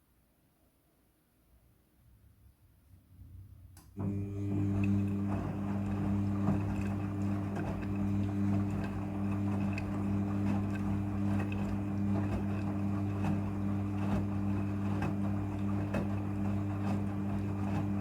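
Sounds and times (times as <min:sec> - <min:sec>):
washing machine motor hum: 0:03.3 - 0:18.0.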